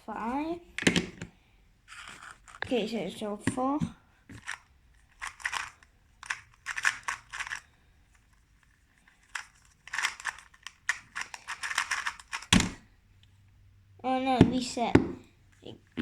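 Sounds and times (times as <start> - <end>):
puzzle cube clicking and rattling: 1.9 - 12.8.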